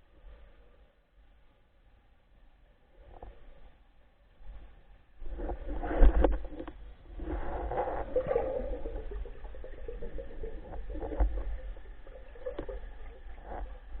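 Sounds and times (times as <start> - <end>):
water sloshing and splashing: 5.2 - 14.0
low rumble: 5.3 - 14.0.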